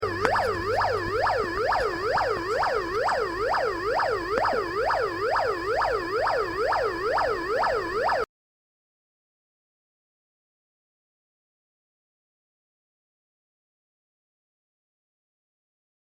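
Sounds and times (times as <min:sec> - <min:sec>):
electronic police siren tone: 0:00.0 - 0:08.3.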